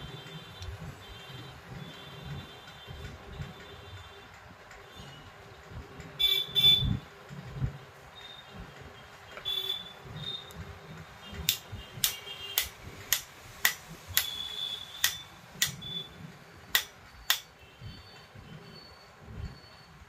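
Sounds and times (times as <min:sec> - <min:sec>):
small hammer tapping metal: 0:11.4 - 0:14.4, 0:15.0 - 0:15.8, 0:16.8 - 0:17.5.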